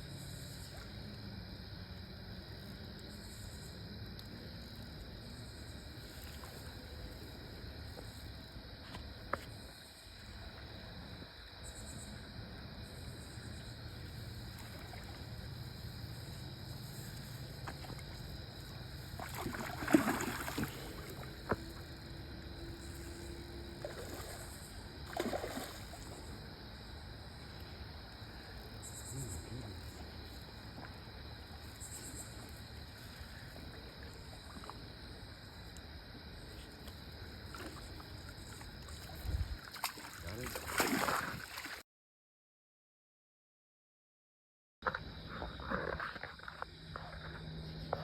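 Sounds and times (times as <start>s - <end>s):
insects chirping: 0.0s - 41.8s, 44.8s - 48.0s
rustling or splashing: 14.1s - 22.0s, 22.8s - 26.4s, 36.6s - 41.8s.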